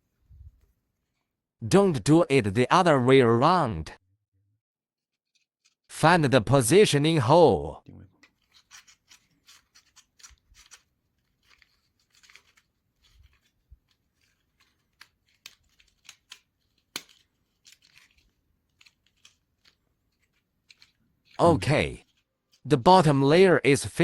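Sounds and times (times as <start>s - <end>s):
light rustling of parts: 8.1s - 21.4s, 22.0s - 22.7s.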